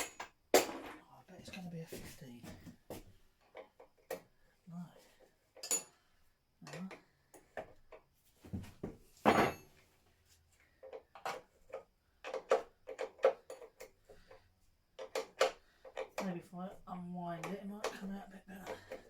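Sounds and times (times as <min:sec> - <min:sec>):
hand tools clicking and clattering: 0:00.0 - 0:00.9, 0:05.5 - 0:06.0, 0:10.8 - 0:16.4, 0:17.3 - 0:19.0.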